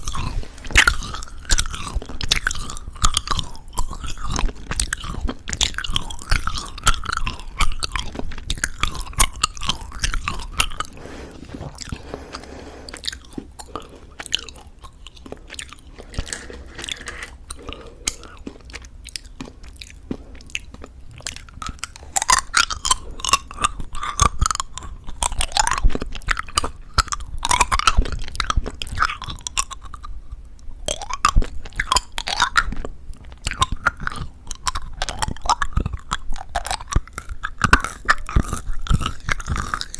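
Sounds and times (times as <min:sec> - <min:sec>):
chewing crunchy candy: 0:00.0 - 0:39.9.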